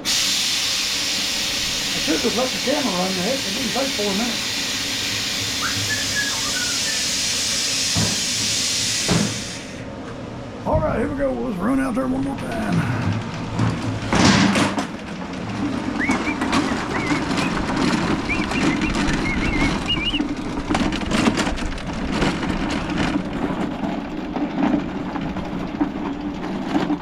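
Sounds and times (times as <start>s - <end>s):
engine starting burst: 0.0s - 9.8s, 15.7s - 20.3s
lawn mower engine running: 0.0s - 27.0s.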